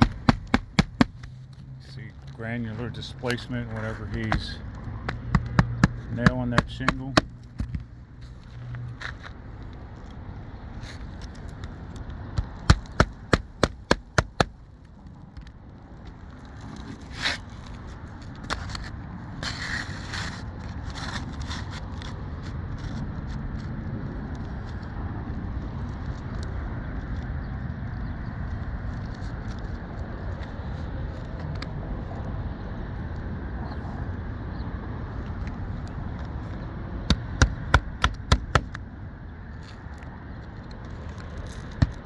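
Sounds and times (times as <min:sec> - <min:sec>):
hammer hitting roofing nails: 0:00.0 - 0:01.4, 0:04.0 - 0:07.9, 0:12.4 - 0:14.6, 0:37.1 - 0:38.8, 0:41.8 - 0:42.0
scraping on shingles: 0:00.0 - 0:09.8, 0:10.8 - 0:14.8, 0:16.2 - 0:23.0, 0:37.1 - 0:38.8.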